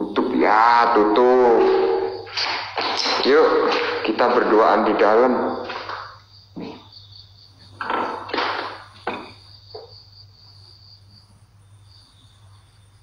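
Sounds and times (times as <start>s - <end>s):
crickets chirping: 0.0s - 13.0s
low electrical hum: 0.0s - 13.0s
sharp knock: 1.4s - 4.5s.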